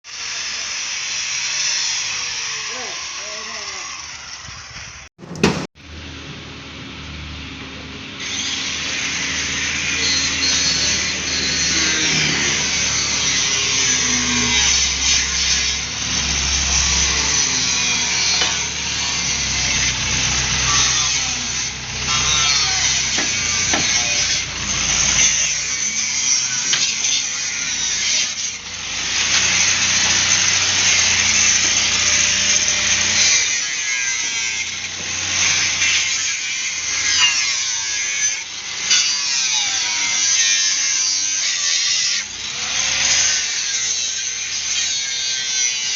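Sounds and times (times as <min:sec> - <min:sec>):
power tool cutting steel: 0:00.1 - 0:05.7, 0:08.2 - 0:45.9.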